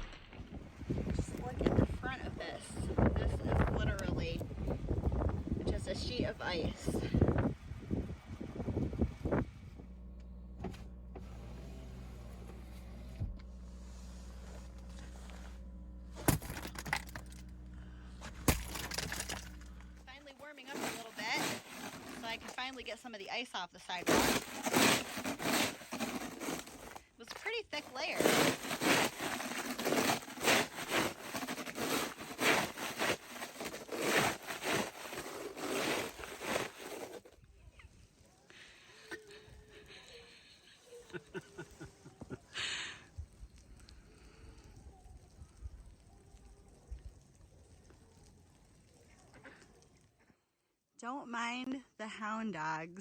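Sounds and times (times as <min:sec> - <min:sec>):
low mechanical hum: 0:00.1 - 0:50.0
ice scraping on sidewalk: 0:00.8 - 0:07.5, 0:11.2 - 0:17.5, 0:18.2 - 0:37.4.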